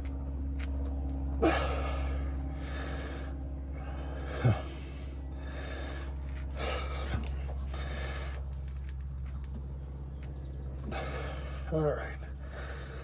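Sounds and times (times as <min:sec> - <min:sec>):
steady low hum: 0:00.0 - 0:13.0
man breathing hard: 0:01.4 - 0:08.9, 0:10.8 - 0:13.0.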